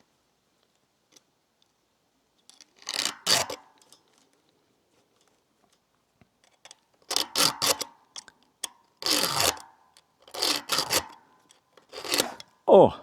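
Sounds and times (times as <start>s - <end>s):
file rasping on chain teeth: 9.0s - 9.6s, 10.3s - 11.2s, 11.9s - 12.5s.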